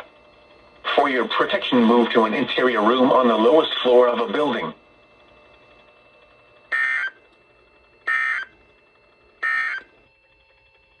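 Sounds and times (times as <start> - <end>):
warbling digital data tones: 6.7 - 7.2, 8.1 - 8.5, 9.4 - 9.9.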